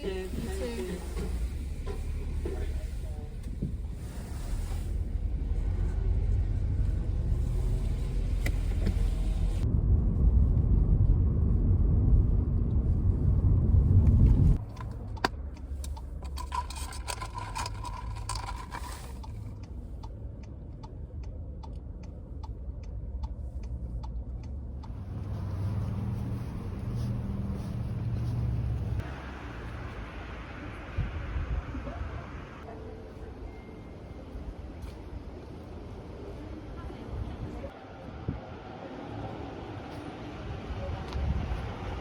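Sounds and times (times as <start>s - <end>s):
car cabin rumble: 0.0s - 9.7s.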